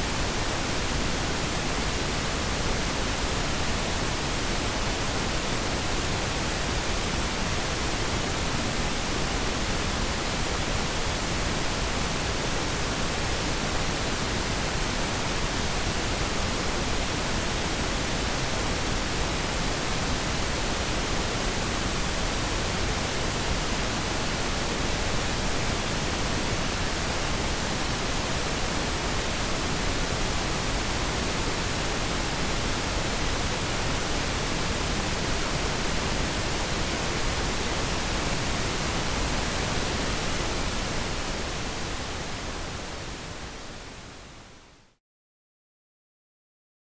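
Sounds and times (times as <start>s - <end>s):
pink noise hiss: 0.0s - 44.9s.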